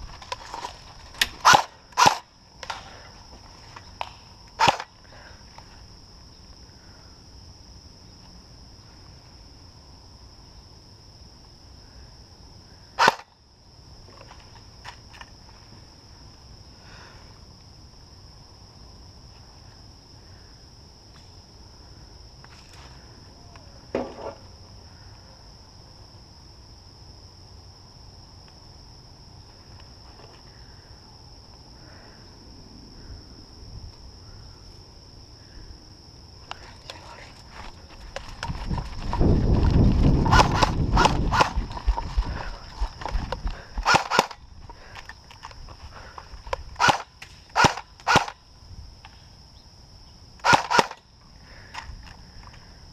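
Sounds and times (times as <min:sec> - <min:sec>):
airsoft guns firing: 0:01.2 - 0:02.9, 0:04.6 - 0:04.9, 0:13.0 - 0:13.3, 0:43.8 - 0:44.4, 0:46.8 - 0:48.4, 0:50.4 - 0:51.0.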